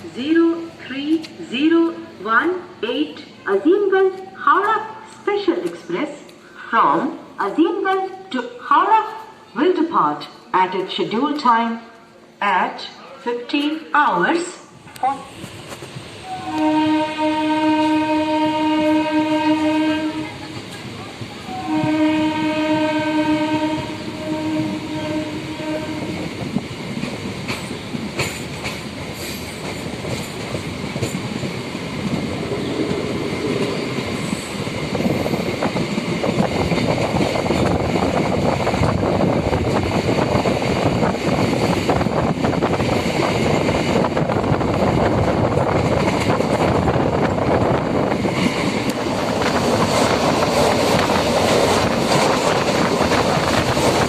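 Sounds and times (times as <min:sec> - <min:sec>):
electric train horn: 0:16.2 - 0:20.6, 0:21.5 - 0:26.2
train wheels clattering over rail joints: 0:26.1 - 0:32.3, 0:32.9 - 0:54.0.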